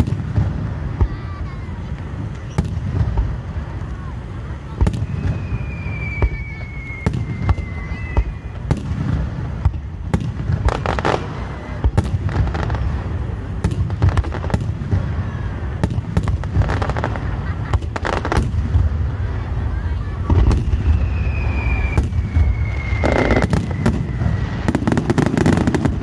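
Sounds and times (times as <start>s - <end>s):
fireworks bursting: 0.0s - 26.0s
falling firework whistle: 4.7s - 9.3s, 15.0s - 26.0s.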